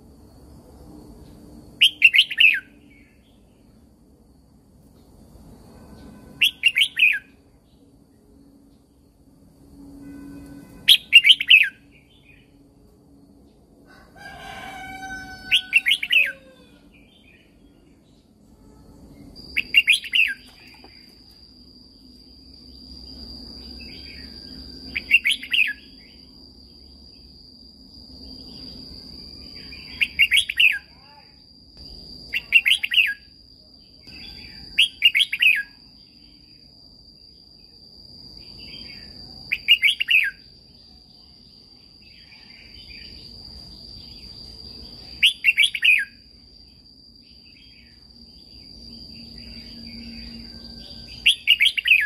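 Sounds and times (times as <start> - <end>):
bird singing warbled phrases: 6.4 - 7.3, 19.5 - 21.1, 24.9 - 26.2, 29.6 - 31.3, 32.3 - 33.2, 49.4 - 52.0.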